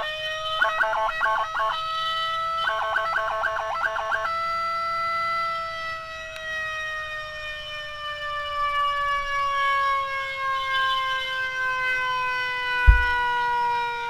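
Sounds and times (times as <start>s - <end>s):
emergency vehicle siren falling: 0.0s - 14.0s
low rumble: 12.9s - 13.2s.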